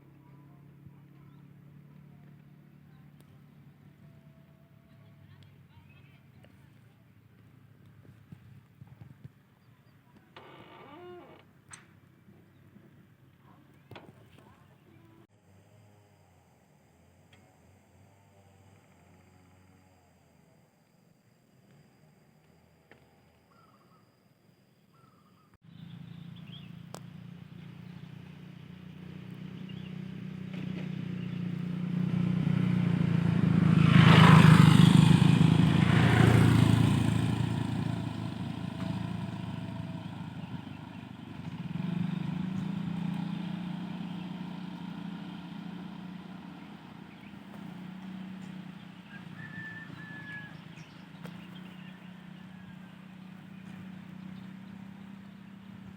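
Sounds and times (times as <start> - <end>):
vehicle engine passing by: 25.6 - 55.9.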